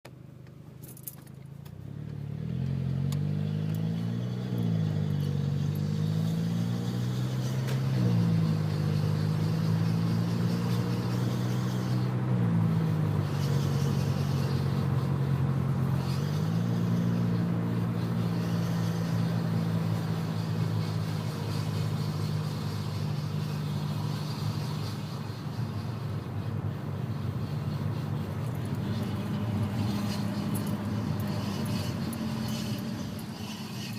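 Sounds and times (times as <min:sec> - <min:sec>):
car engine: 0:00.0 - 0:33.9
road noise: 0:00.0 - 0:33.9.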